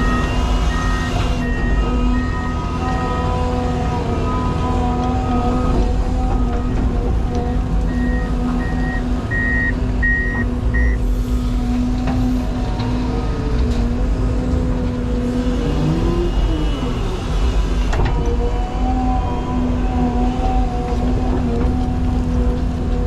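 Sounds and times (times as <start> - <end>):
backup alarm beeps: 0.0 - 3.0, 7.9 - 11.0
hydraulic whine: 0.0 - 22.8
excavator diesel engine: 0.0 - 23.0.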